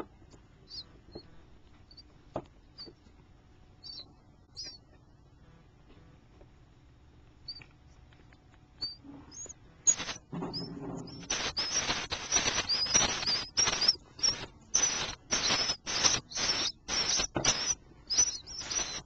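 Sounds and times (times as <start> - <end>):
baby birds chirping: 0.7 - 1.3, 1.9 - 2.1, 2.8 - 3.0, 3.8 - 4.9, 7.4 - 7.7, 8.8 - 19.0.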